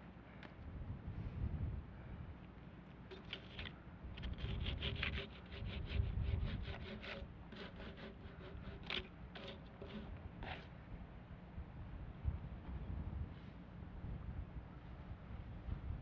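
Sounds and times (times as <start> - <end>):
hand saw cutting wood: 3.1 - 10.7.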